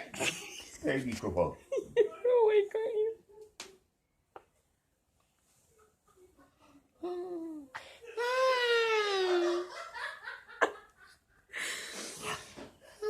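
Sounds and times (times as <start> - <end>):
person laughing: 8.8 - 9.8.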